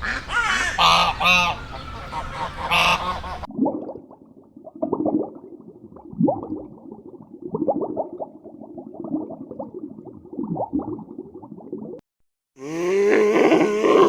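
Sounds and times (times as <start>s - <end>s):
short rising animal calls: 0.0s - 3.5s
large animal low grunting calls: 12.6s - 14.0s.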